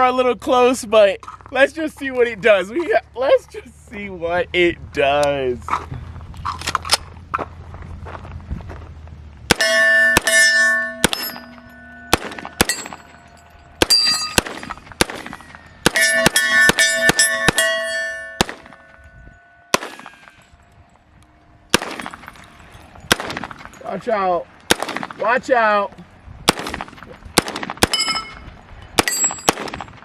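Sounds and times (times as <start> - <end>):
gunshots: 9.5 - 19.0, 19.7 - 20.4, 21.7 - 22.5, 23.1 - 23.8, 24.7 - 25.3, 26.4 - 28.4, 29.0 - 30.0
steel targets clanging: 9.5 - 20.6, 21.7 - 24.4, 27.8 - 30.0.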